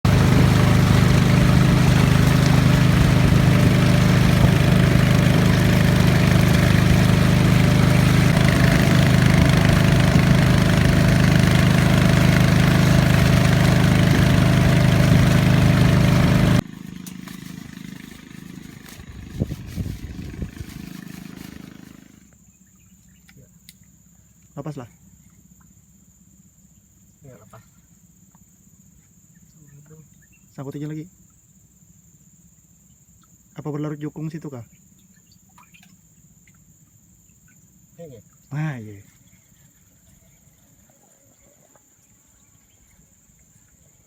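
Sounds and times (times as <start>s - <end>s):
small engine running: 0.0s - 22.4s.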